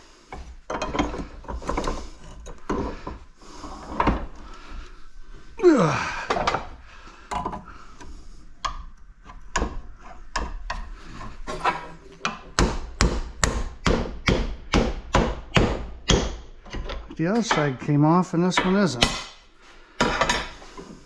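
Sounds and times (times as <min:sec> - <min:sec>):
knocks and scrapes: 0:00.2 - 0:05.6, 0:06.3 - 0:13.1
hammer striking metal: 0:12.6 - 0:16.4.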